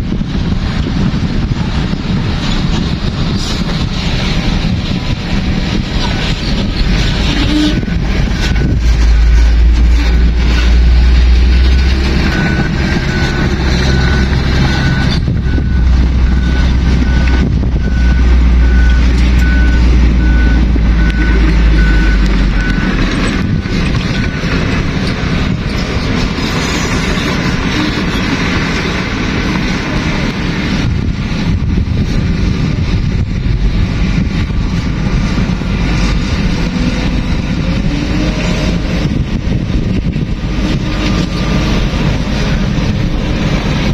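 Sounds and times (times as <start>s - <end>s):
heavy diesel engine running: 0.0s - 43.9s
reversing alarm beeping: 7.0s - 25.4s.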